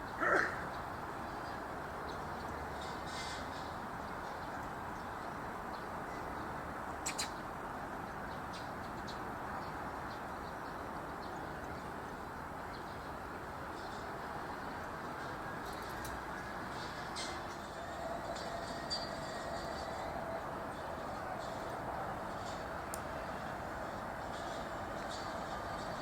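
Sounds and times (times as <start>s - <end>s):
outdoor background noise: 0.0s - 26.0s
sharp short bird calls: 0.2s - 0.6s, 7.0s - 7.4s
faint high bird chirps: 7.0s - 7.4s.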